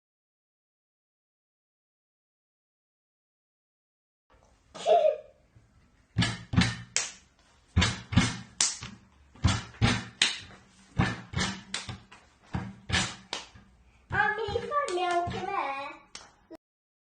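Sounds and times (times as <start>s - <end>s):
sharp knocks: 6.2s - 15.6s.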